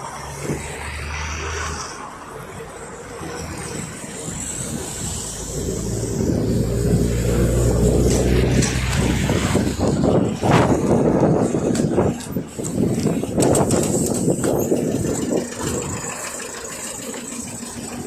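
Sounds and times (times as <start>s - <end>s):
trolleybus motor humming: 2.0s - 18.0s
knocks and rattles: 7.9s - 18.0s.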